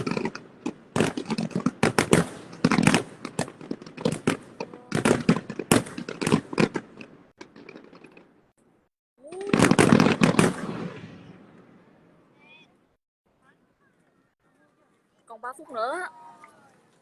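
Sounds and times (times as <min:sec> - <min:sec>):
fireworks bangs and crackles: 0:00.0 - 0:08.5, 0:09.3 - 0:12.6.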